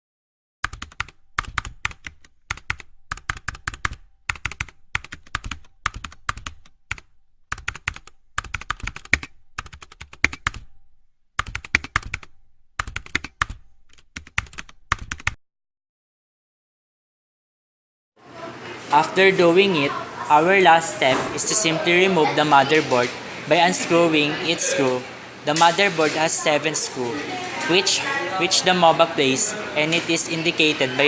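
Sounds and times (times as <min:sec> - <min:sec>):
rapid irregular clicking and tapping: 0:00.6 - 0:10.8, 0:11.4 - 0:15.4.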